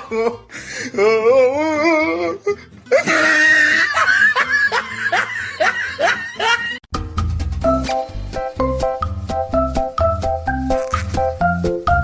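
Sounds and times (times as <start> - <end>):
person laughing hard: 2.9 - 6.8.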